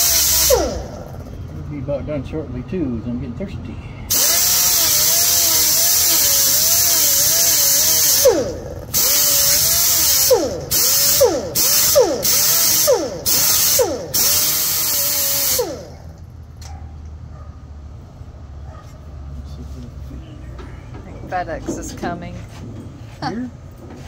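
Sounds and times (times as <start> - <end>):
power grinder whining: 0.0 - 1.5, 4.1 - 16.3.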